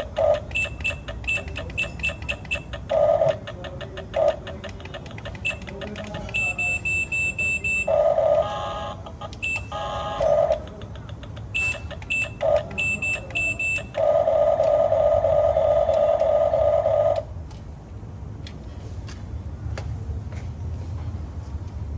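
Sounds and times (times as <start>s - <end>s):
short high beeps: 0.4s - 2.7s, 5.4s - 8.8s, 9.4s - 10.2s, 11.5s - 14.0s.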